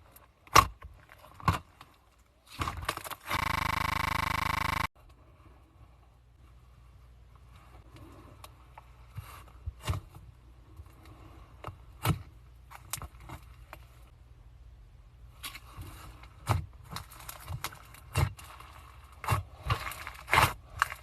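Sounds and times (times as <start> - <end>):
low hum: 3.3 - 4.9.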